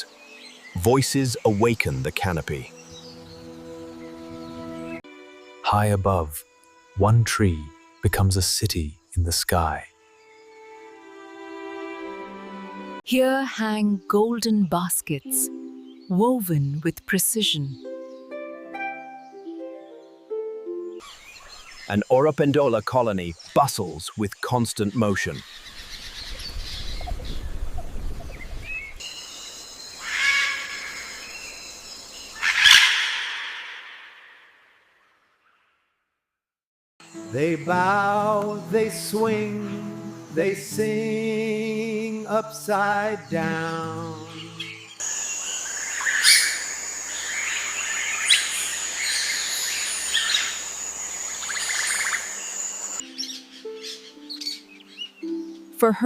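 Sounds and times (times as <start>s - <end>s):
birds chirping: 0.0s - 12.1s, 13.1s - 35.6s, 42.0s - 56.0s
soft music with low notes: 0.0s - 21.0s, 37.0s - 44.8s, 53.0s - 56.0s
insect whine: 21.0s - 34.6s, 43.9s - 53.2s
bird sustained call: 30.0s - 31.6s, 32.3s - 34.6s, 44.1s - 55.8s.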